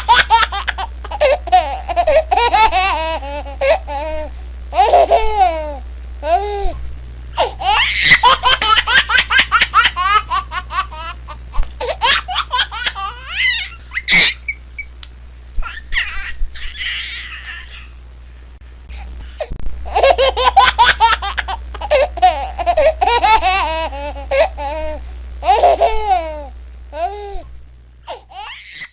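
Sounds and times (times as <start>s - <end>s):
baby laughing and squealing: 0.0s - 6.5s, 7.4s - 14.9s, 15.6s - 18.0s, 19.9s - 27.1s, 28.1s - 28.9s
baby shrieking: 7.6s - 8.4s, 15.6s - 17.9s.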